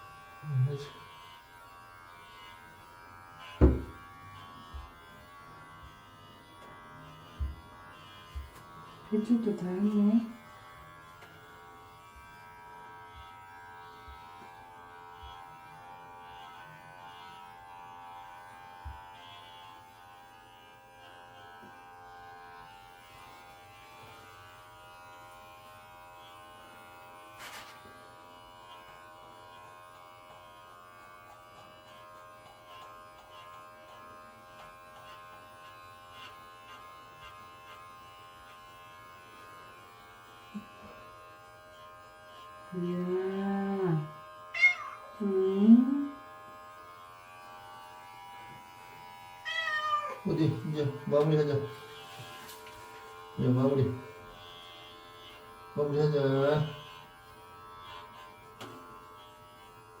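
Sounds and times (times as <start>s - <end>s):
electric hair clipper buzzing: 0.0s - 60.0s.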